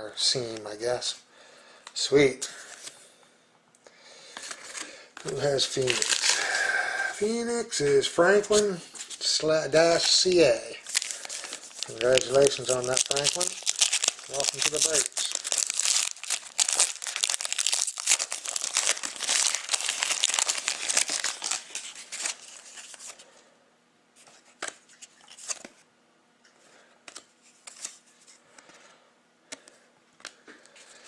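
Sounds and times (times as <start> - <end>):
wrapper tearing and crinkling: 5.2 - 6.7, 10.0 - 23.1.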